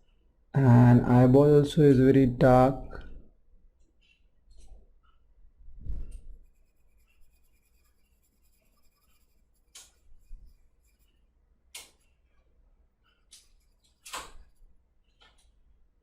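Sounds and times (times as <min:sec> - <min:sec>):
pencil scratching on paper: 0:06.1 - 0:11.3, 0:13.1 - 0:14.6.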